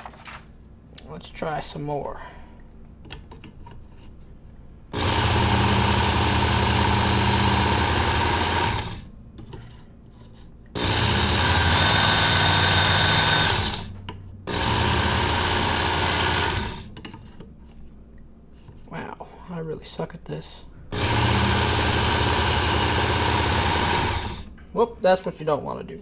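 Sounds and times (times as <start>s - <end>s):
belt sharpener grinding knife: 5.0s - 9.0s, 10.8s - 13.9s, 14.5s - 17.1s, 20.9s - 24.5s.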